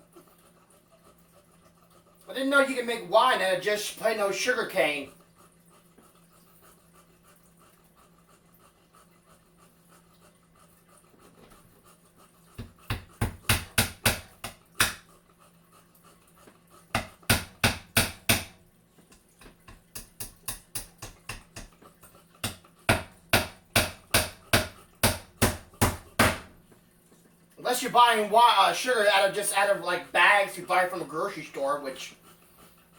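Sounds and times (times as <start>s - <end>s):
hammer driving nails into wood: 12.6s - 15.0s, 17.0s - 18.6s, 22.4s - 26.5s.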